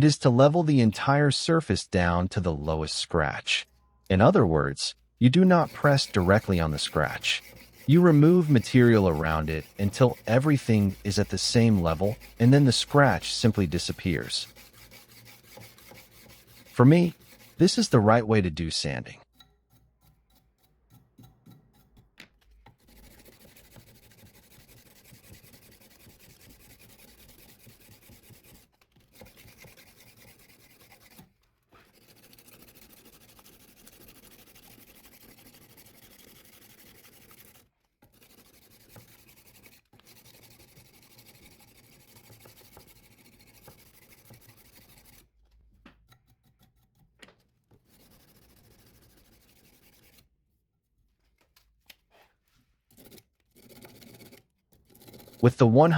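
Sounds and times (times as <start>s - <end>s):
sandpaper scraping a knife blade: 0.4s - 1.2s, 4.3s - 18.2s, 22.8s - 45.3s, 47.8s - 50.3s, 52.9s - 55.5s.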